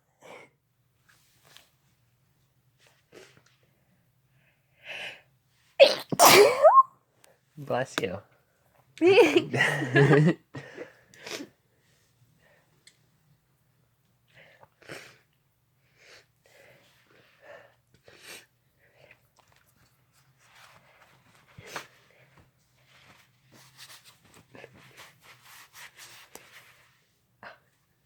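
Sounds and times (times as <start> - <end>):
person sniffing: 5.8 - 6.8.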